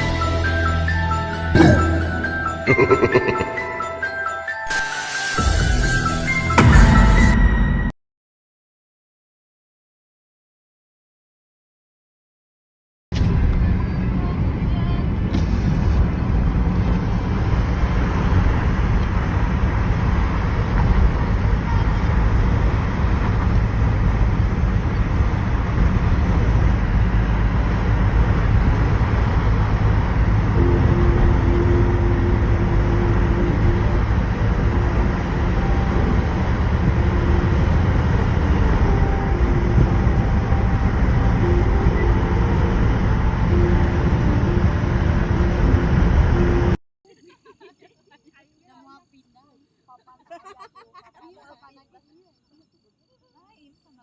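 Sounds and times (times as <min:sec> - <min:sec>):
road vehicle rumble: 0:13.2 - 0:46.8.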